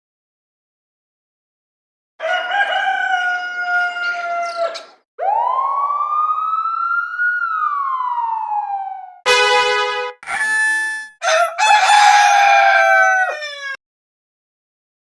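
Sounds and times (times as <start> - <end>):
screams: 10.2 - 11.5.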